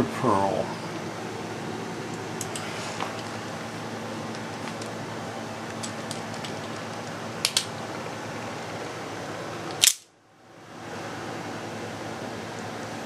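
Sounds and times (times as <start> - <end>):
fan hum: 0.0 - 13.0
switchblade sharp snap: 9.8 - 10.1.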